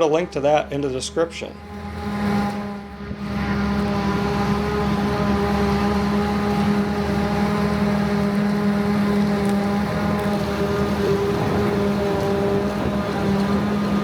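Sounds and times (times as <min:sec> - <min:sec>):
diesel engine drone: 0:00.0 - 0:14.0
forage harvester chopping: 0:08.3 - 0:14.0.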